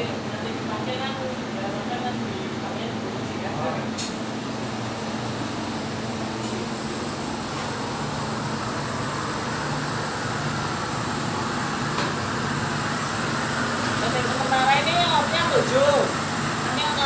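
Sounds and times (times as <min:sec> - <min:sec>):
steam boiler rushing noise: 0:03.9 - 0:17.0.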